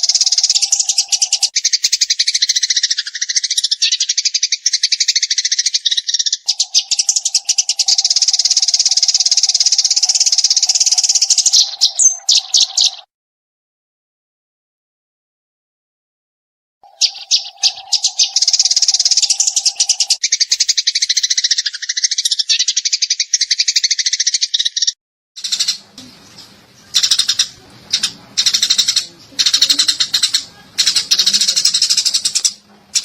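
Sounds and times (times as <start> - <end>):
sparrow chattering: 0.0 - 13.1, 16.8 - 33.0
faint low hum: 25.4 - 33.0.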